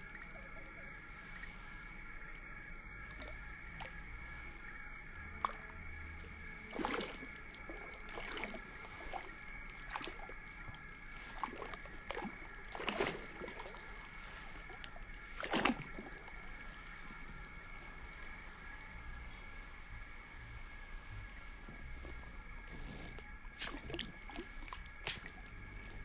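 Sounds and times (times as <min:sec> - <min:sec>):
splashing in shallow water: 0:00.0 - 0:19.0, 0:20.0 - 0:26.0.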